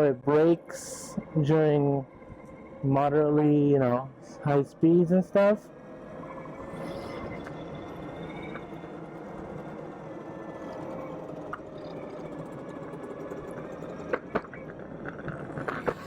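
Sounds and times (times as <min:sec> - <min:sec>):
faint electric motor whine: 0:00.0 - 0:16.0
wheels rolling on pavement: 0:05.5 - 0:16.0.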